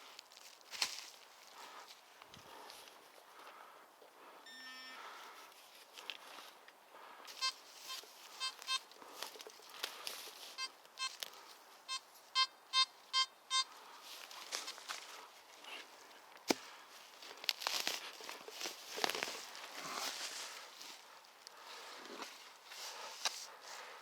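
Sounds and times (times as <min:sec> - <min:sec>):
footsteps on forest floor: 0:00.0 - 0:03.0, 0:14.0 - 0:24.0
low tone: 0:04.4 - 0:05.4
metal detector beeps: 0:04.4 - 0:05.4, 0:07.3 - 0:08.9, 0:10.5 - 0:11.2, 0:11.9 - 0:13.7.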